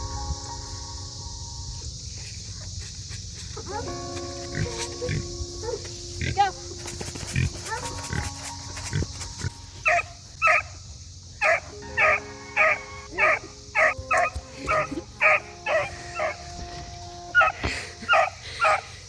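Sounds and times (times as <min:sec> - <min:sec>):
dog barking: 0:09.8 - 0:10.8, 0:11.4 - 0:16.4, 0:17.4 - 0:18.9.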